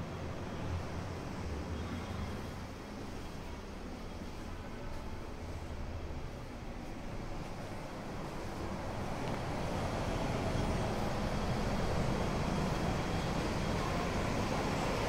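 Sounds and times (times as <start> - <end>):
road traffic rumbling hum: 5.4 - 15.0.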